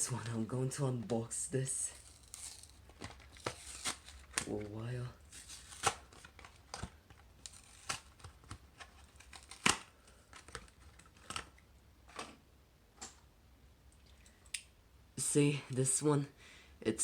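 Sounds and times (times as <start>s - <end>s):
plastic blister pack crinkling: 1.7s - 11.6s.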